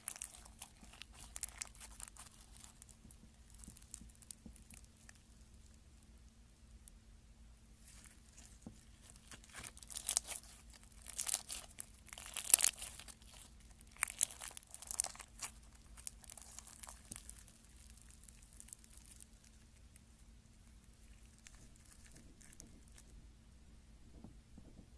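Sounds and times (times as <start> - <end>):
slime crackling and crinkling: 0.0 - 6.1, 7.8 - 23.2.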